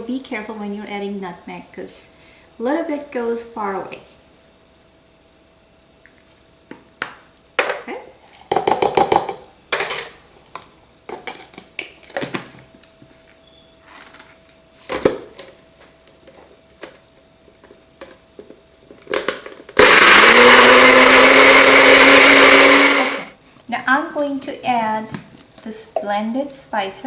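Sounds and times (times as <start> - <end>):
electric blender running: 19.8 - 23.4.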